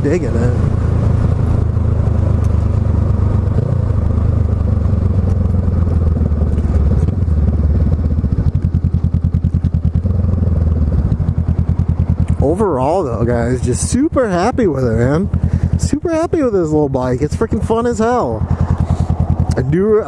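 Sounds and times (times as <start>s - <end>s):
motorcycle engine running: 0.0s - 20.0s
exhaust rapid pulsing: 12.8s - 20.0s.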